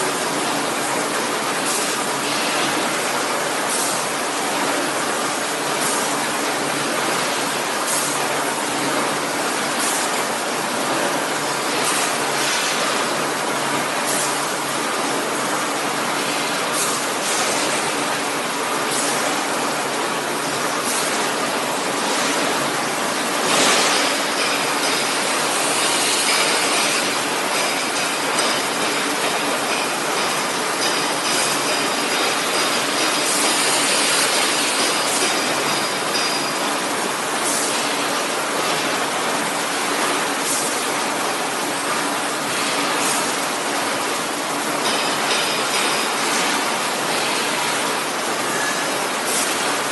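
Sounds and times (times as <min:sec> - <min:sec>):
packaging machinery din: 0:23.3 - 0:36.8.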